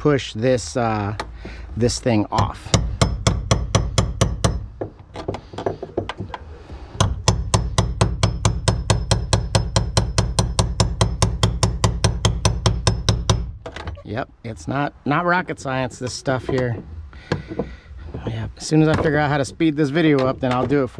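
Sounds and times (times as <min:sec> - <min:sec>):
rapid hammer blows on metal: 0:07.0 - 0:13.5.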